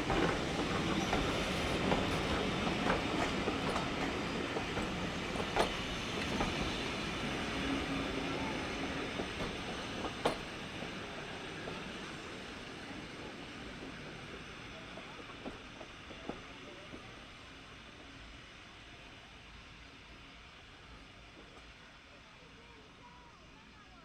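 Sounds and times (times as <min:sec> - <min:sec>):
train wheels clicking over rail joints: 0:00.0 - 0:12.0.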